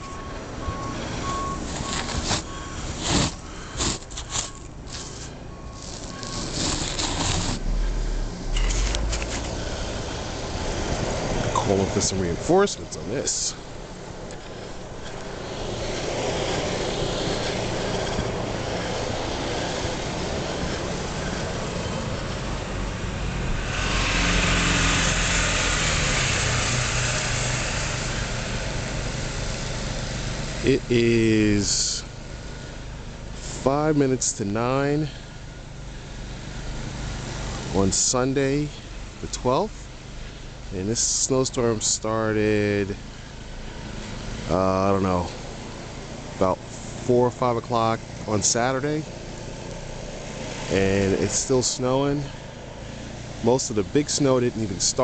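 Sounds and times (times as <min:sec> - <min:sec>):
truck reversing alarm beeping: 0:00.0 - 0:09.0, 0:13.4 - 0:30.9
truck engine running: 0:00.0 - 0:55.0
rushes of noise: 0:00.9 - 0:29.4.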